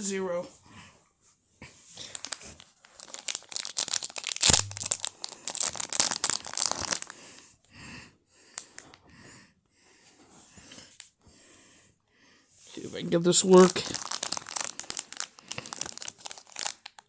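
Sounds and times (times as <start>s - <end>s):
plastic wrapping crinkling: 2.0s - 7.2s, 13.0s - 17.0s.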